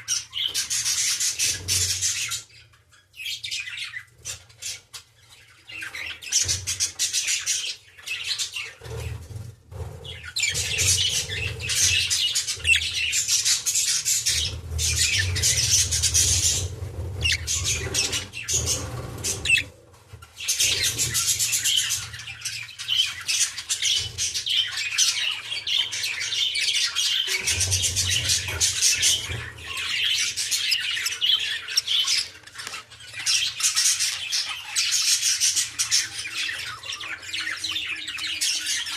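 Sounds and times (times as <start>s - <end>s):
budgerigars chattering: 10.0s - 19.7s, 20.4s - 38.9s.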